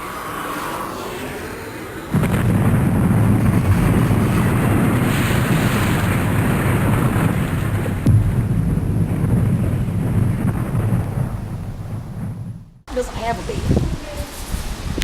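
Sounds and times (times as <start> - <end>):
thunder crack: 2.1 - 13.0
low rolling thunder rumble: 2.1 - 14.0.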